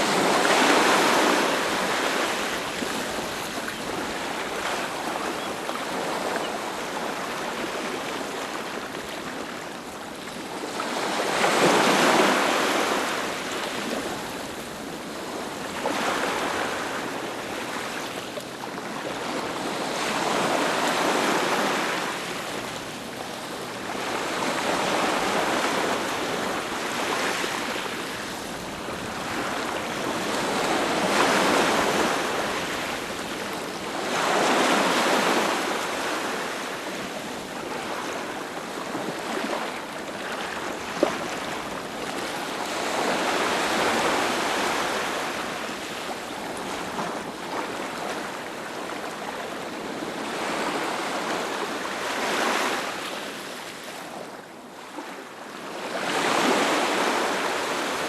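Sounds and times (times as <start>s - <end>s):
ocean waves breaking: 0.0s - 9.5s.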